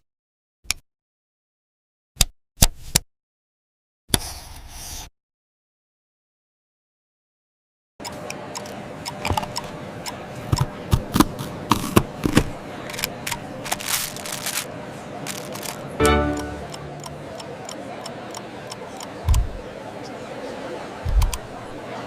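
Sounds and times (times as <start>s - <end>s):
packaging rustling tear: 11.2s - 14.7s, 15.3s - 15.9s
short pitched sound: 16.0s - 17.3s
sharp clicks and snips: 19.0s - 19.6s, 21.1s - 21.4s.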